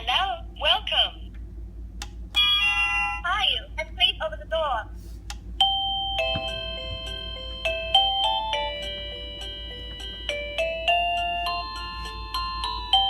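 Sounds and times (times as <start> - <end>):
electronic doorbell chime melody: 5.6 - 13.0.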